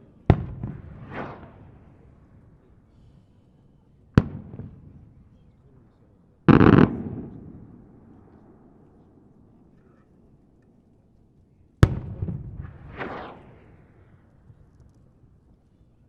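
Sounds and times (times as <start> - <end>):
dense fireworks burst: 0.3 - 2.1, 6.5 - 8.3
fireworks bangs with echoes: 0.3 - 2.1, 4.2 - 5.2, 6.5 - 8.5, 11.8 - 14.0.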